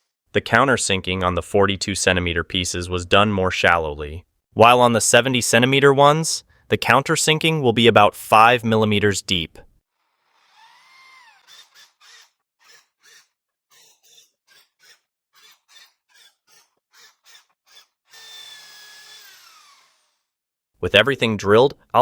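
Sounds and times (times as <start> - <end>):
electric drill boring into wood: 10.0 - 20.4.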